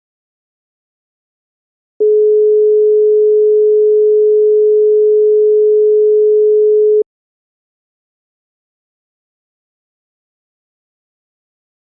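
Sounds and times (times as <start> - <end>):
telephone holding tone: 2.0 - 7.0.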